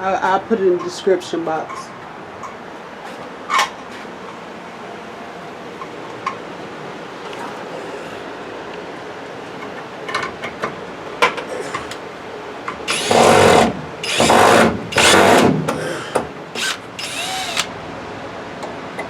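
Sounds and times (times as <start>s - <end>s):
power drill driving screws: 12.9s - 15.5s, 16.6s - 17.7s.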